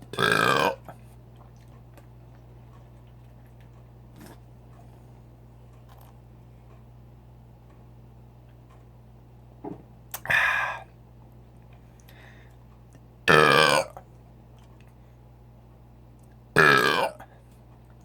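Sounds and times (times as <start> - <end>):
man burping loudly: 0.1 - 0.8, 13.3 - 14.0, 16.6 - 17.2.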